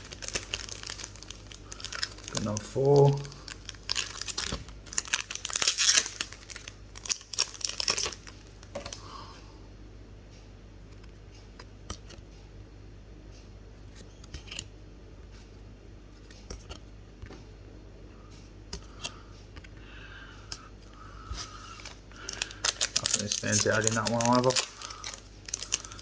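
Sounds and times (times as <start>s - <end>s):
steady low hum: 0.0s - 26.0s
cards clicking and snapping: 16.3s - 17.4s, 21.7s - 26.0s.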